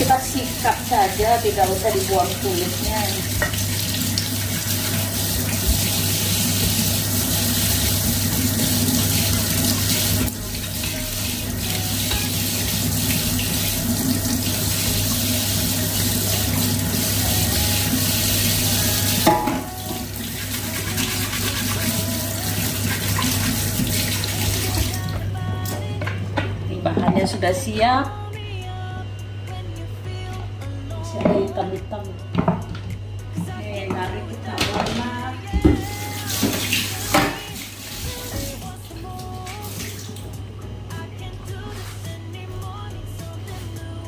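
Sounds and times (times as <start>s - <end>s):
tap running into a sink: 2.2s - 16.8s, 35.6s - 38.6s
brush scrubbing produce: 20.3s - 24.9s.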